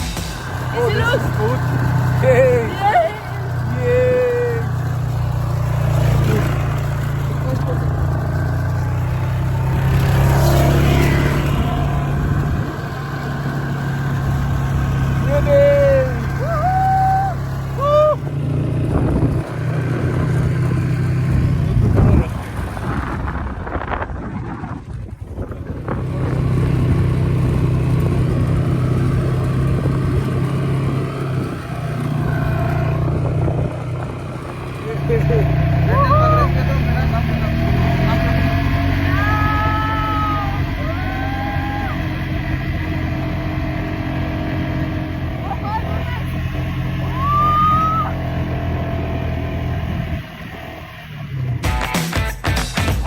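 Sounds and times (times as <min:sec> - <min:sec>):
quad bike engine running: 0:00.0 - 0:53.0.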